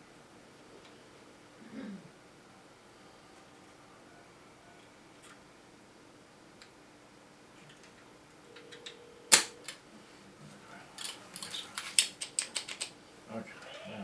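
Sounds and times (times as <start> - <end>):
small hard objects clicking: 11.4 - 12.9.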